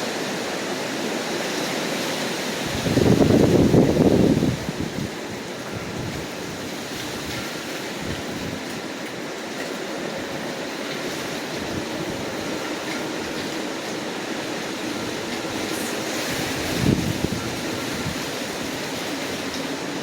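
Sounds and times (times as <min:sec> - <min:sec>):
strong wind rushing: 0:02.6 - 0:07.4, 0:14.6 - 0:19.5.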